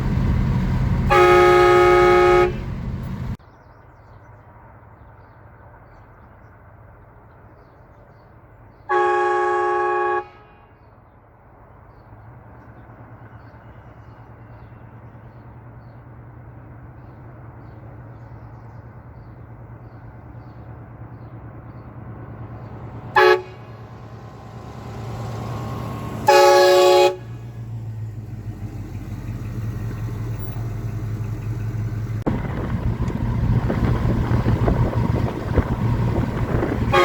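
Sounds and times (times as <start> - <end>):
car engine running: 0.0 - 3.4, 17.0 - 37.0
train horn blasts: 1.0 - 2.9, 8.9 - 10.8, 22.7 - 27.6, 36.8 - 37.0.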